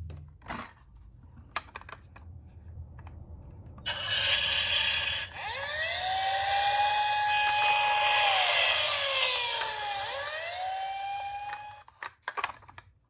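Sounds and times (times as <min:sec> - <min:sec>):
toy police siren wailing: 0:03.9 - 0:11.9.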